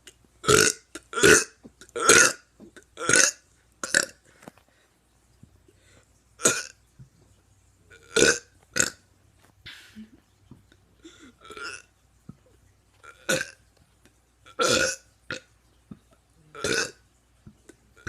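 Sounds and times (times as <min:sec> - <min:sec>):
teenager burping: 0:00.4 - 0:04.2, 0:06.4 - 0:06.8, 0:07.9 - 0:09.0, 0:11.0 - 0:11.9, 0:13.0 - 0:13.6, 0:14.5 - 0:15.4, 0:16.5 - 0:17.0.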